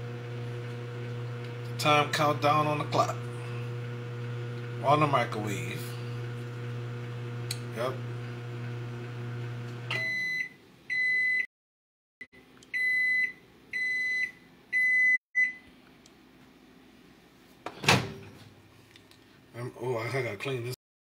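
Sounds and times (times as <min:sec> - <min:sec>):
microwave hum: 0:00.0 - 0:11.3.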